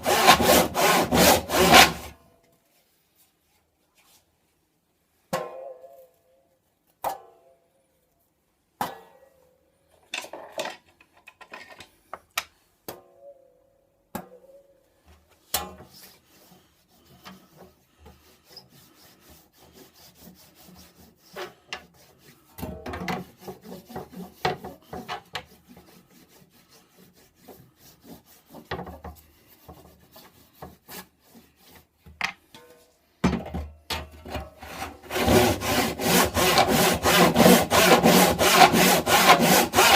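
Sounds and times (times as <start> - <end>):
scraping strokes on wood: 0.0 - 2.1, 15.7 - 32.2, 34.6 - 39.9
hand saw sawing: 0.0 - 2.2, 15.8 - 32.0, 34.6 - 39.9.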